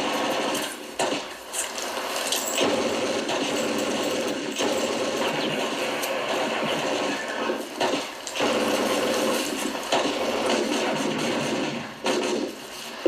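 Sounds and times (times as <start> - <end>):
bb gun firing full auto: 2.3 - 12.5.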